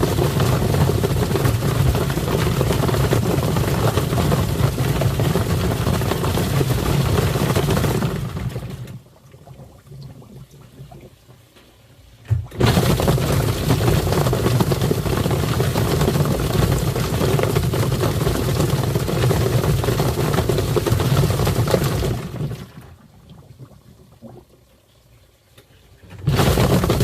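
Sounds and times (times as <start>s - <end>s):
washing machine motor humming: 0.0s - 9.0s, 12.2s - 23.0s, 26.2s - 27.0s
water splashing: 0.0s - 11.4s, 12.3s - 24.8s.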